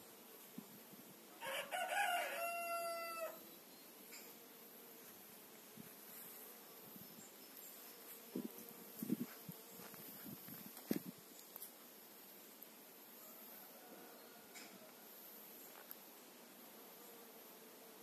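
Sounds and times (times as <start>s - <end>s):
rooster crowing: 1.4s - 3.4s, 13.2s - 15.0s.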